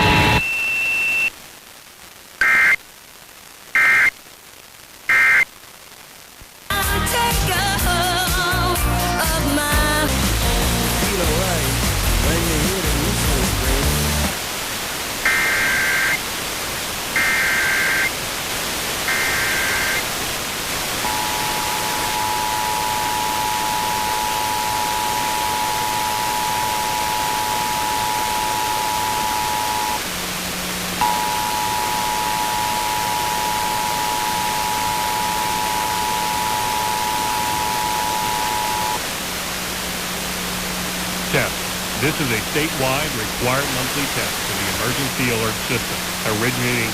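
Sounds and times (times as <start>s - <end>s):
radio hiss: 0.0s - 46.9s
two-tone attention signal: 21.0s - 30.0s, 31.0s - 39.0s
warbling data tones: 21.0s - 30.0s, 31.0s - 39.0s
low hum: 21.0s - 46.9s.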